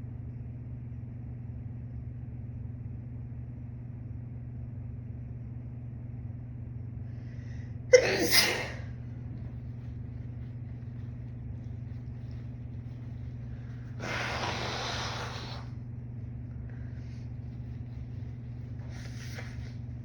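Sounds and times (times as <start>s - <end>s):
steady low hum: 0.0s - 20.0s
woman breathing through nose: 13.8s - 15.7s.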